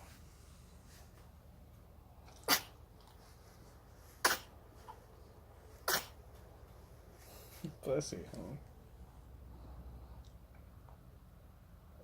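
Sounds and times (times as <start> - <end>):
person sneezing: 2.4 - 2.8, 4.2 - 4.5, 5.8 - 6.2.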